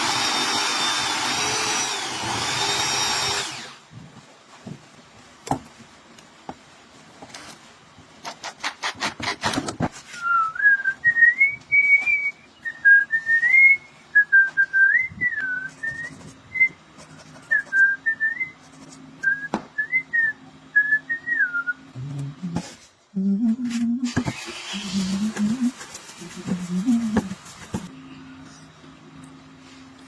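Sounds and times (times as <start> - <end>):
person whistling a tune: 10.1 - 16.8, 17.5 - 18.6, 19.2 - 21.8
faint low hum: 10.2 - 30.0.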